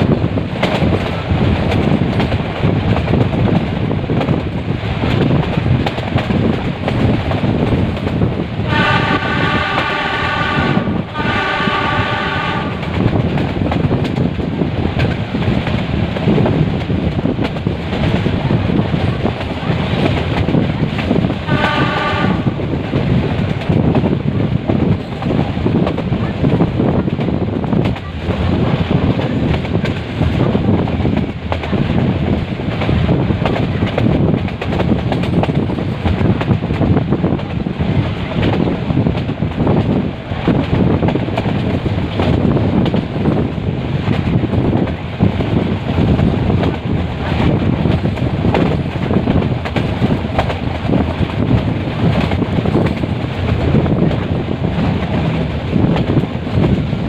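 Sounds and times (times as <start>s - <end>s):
train wheels rumbling on track: 0.0s - 57.0s
train horn blasts: 8.7s - 13.0s, 21.4s - 22.6s.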